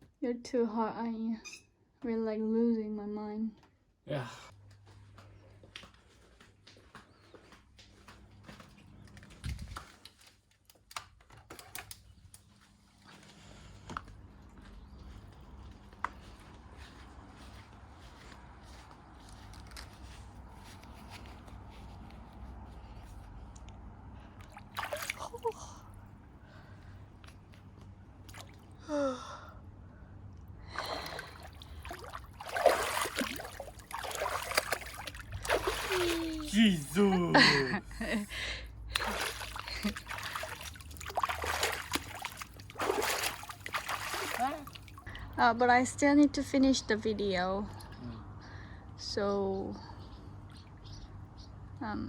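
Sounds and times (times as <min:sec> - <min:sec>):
water splashing and trickling: 0:24.3 - 0:25.8, 0:28.2 - 0:28.8, 0:30.7 - 0:37.8, 0:38.9 - 0:45.2
sharp water splash: 0:24.4 - 0:25.4, 0:31.0 - 0:36.5, 0:38.9 - 0:45.0.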